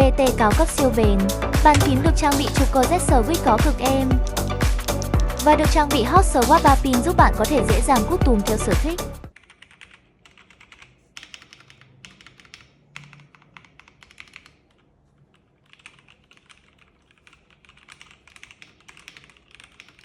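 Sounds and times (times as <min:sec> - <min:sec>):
mechanical keyboard typing: 0:09.3 - 0:20.0.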